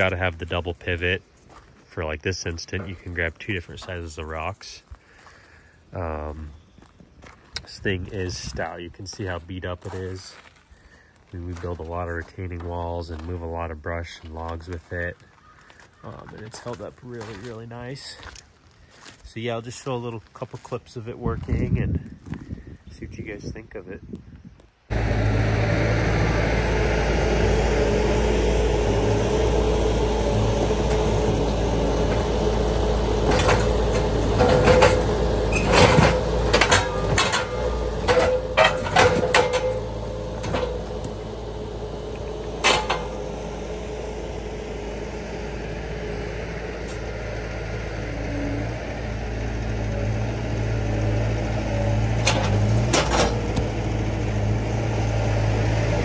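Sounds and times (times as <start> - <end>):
skid steer engine running: 24.9 - 56.0
grapple clanking and knocking: 30.7 - 41.3, 42.1 - 43.3, 51.2 - 54.5.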